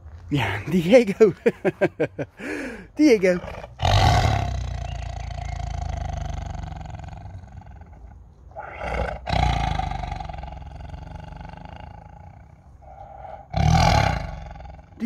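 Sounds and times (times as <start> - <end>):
tiger roaring: 3.2 - 15.0
tiger sharp breath in: 12.8 - 13.7.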